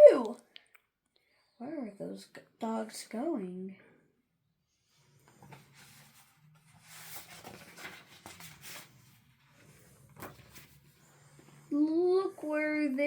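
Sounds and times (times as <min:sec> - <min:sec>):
paper pages rustling: 0:05.2 - 0:11.4.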